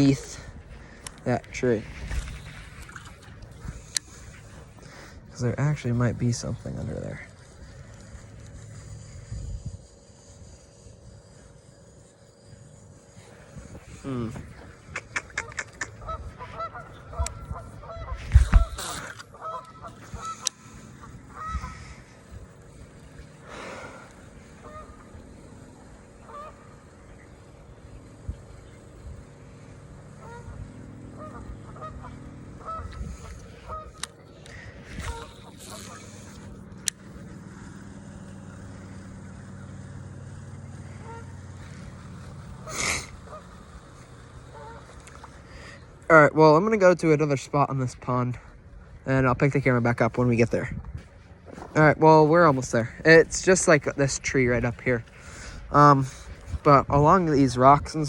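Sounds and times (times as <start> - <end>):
steady low hum: 0.0 - 58.0
geese honking: 11.3 - 46.3.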